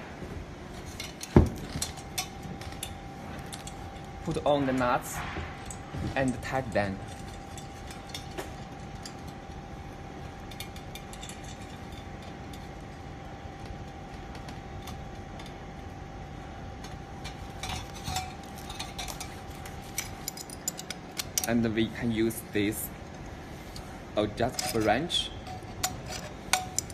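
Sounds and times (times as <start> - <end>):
faint steady hum: 0.0 - 26.9
metal nuts clicking and clinking: 10.4 - 12.9, 17.2 - 21.7, 23.8 - 26.9.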